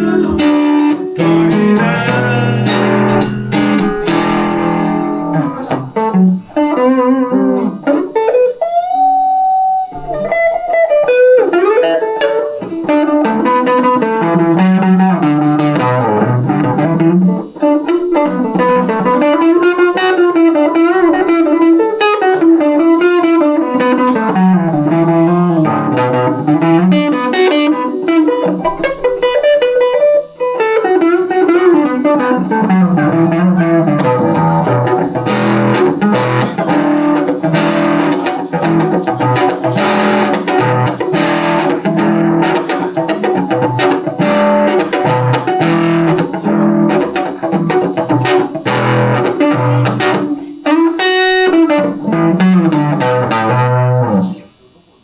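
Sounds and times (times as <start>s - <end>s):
electric guitar melodic lines: 0.0s - 54.5s.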